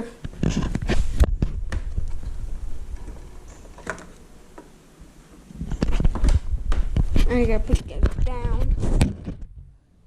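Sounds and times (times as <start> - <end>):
phone handling thumps and rumbling: 5.6 - 9.7.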